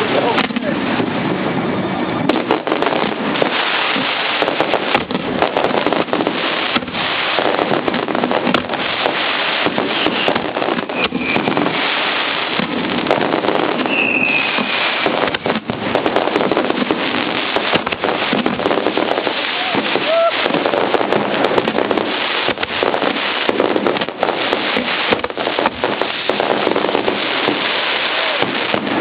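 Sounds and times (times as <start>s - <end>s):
fireworks crackling and banging: 0.0s - 29.0s
falling firework whistle: 9.0s - 15.7s, 19.3s - 20.7s.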